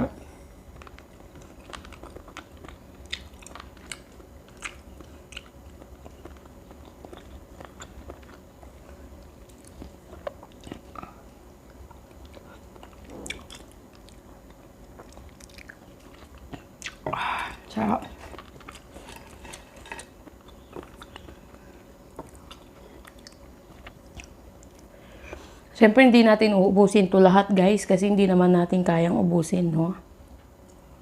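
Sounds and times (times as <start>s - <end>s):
person chewing and biting: 0.7s - 17.1s, 18.2s - 24.9s.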